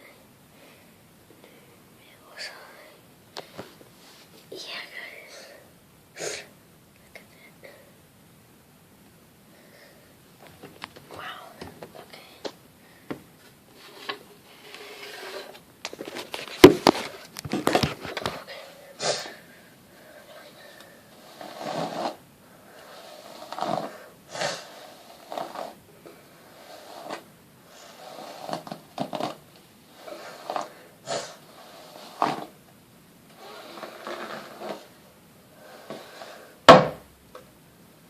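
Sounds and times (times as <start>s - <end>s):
loud sharp knock: 36.7s - 37.0s.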